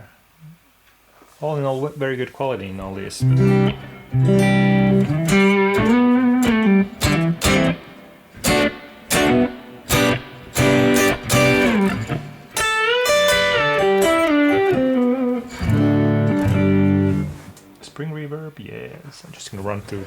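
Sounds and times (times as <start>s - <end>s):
electric guitar with reverb: 3.2s - 17.8s.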